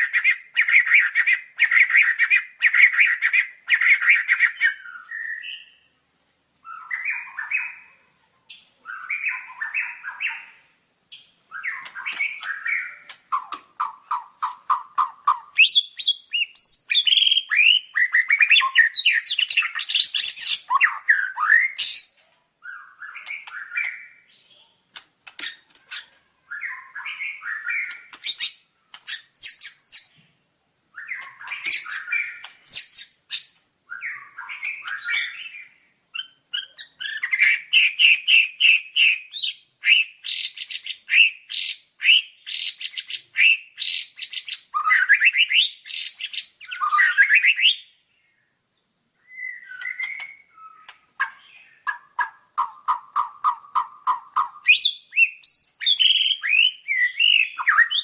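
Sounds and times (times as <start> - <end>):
bird singing whistled phrases: 0.2 - 5.9, 11.5 - 24.7, 31.0 - 47.9, 49.2 - 58.0.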